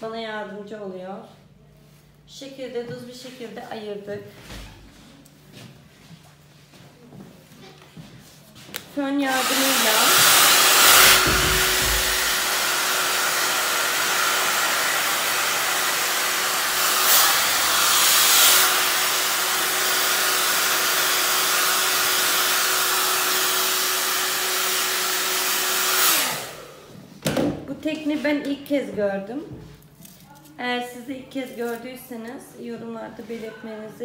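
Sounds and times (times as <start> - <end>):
hair dryer blowing: 8.8 - 27.0
hair dryer motor winding down: 9.3 - 27.0.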